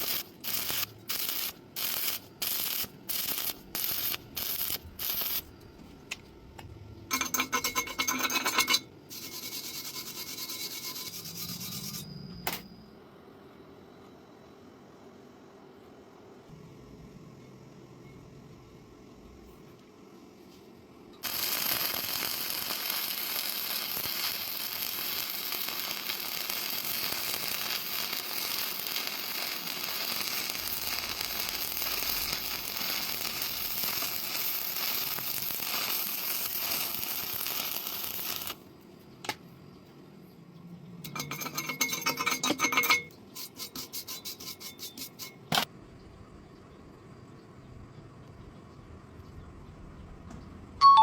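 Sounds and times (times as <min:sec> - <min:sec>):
arc welding crackling sizzle: 0:00.0 - 0:12.0, 0:21.2 - 0:39.7.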